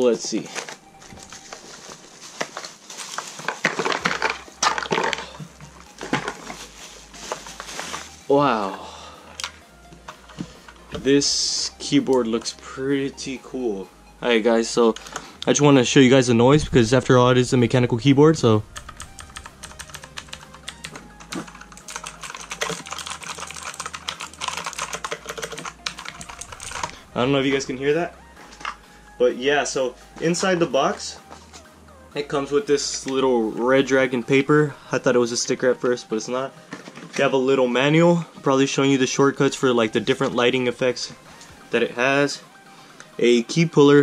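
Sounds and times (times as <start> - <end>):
packaging rustling and scraping: 0.3 - 8.8, 21.4 - 27.6, 36.6 - 37.3
mechanical keyboard keys clicking: 18.8 - 26.9.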